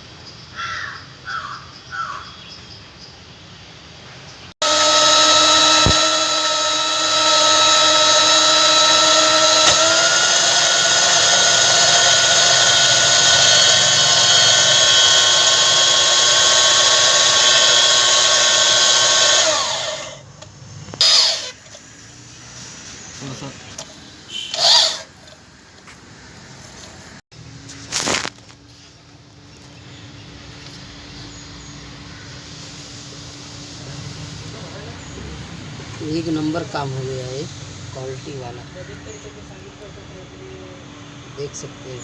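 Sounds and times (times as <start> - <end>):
power tool motor whining: 4.6 - 20.2, 21.0 - 21.8, 24.5 - 25.4.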